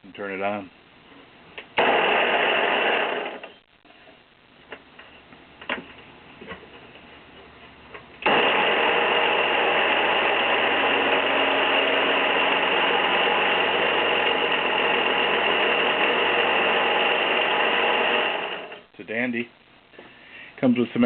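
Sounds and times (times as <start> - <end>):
wet belt sander running: 8.3 - 18.8.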